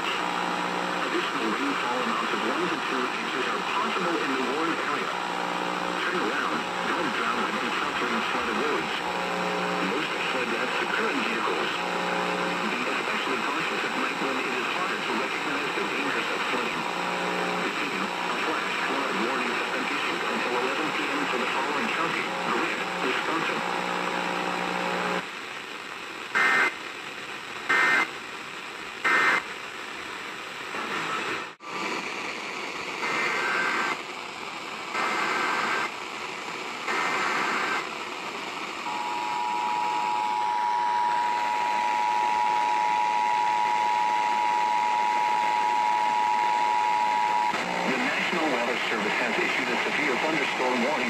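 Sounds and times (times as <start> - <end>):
radio hiss: 0.0 - 51.0.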